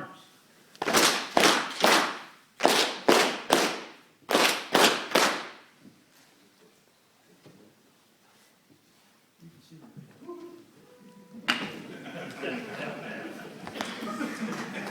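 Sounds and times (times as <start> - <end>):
group clapping in unison: 0.8 - 5.7, 13.6 - 14.9.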